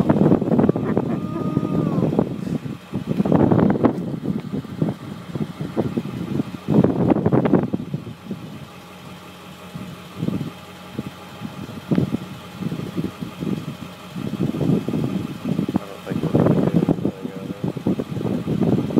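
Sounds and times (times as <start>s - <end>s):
wind buffeting microphone: 0.0s - 8.8s, 9.6s - 18.9s.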